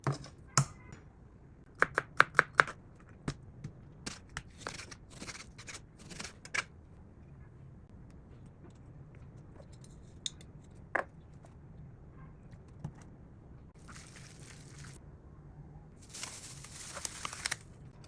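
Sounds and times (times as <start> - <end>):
rustling: 16.0 - 17.7.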